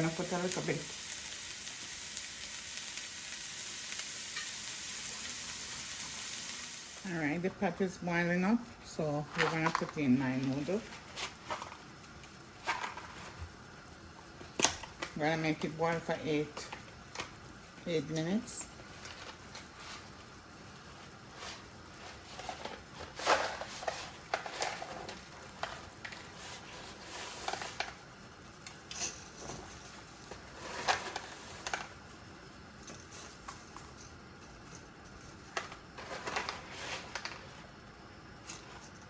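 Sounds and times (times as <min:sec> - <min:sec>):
low steady background hiss: 0:00.0 - 0:39.0.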